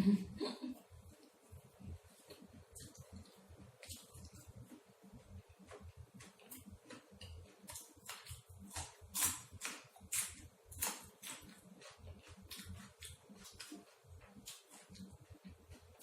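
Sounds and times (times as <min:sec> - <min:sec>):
person chewing food: 0:01.0 - 0:16.0.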